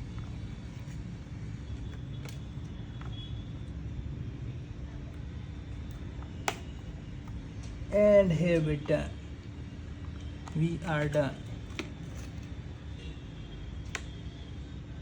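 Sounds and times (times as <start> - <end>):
faint clicks of laptop parts: 1.7 - 3.8, 9.4 - 12.6, 13.8 - 14.2.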